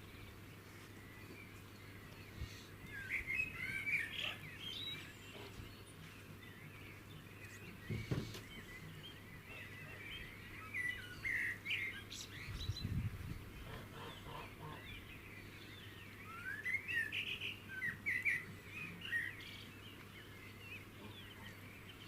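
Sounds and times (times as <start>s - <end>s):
songbirds warbling and chirping: 0.0s - 22.0s
knock: 7.9s - 8.4s.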